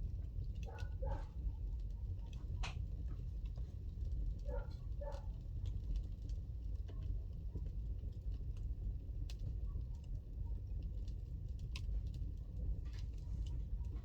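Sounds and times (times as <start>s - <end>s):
low fire rumble: 0.0s - 14.0s
wood fire crackling and popping: 5.5s - 14.0s.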